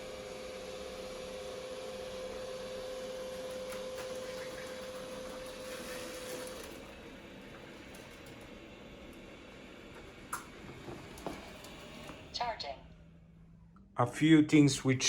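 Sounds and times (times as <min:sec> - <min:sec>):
robot vacuum motors whirring: 0:02.0 - 0:12.4.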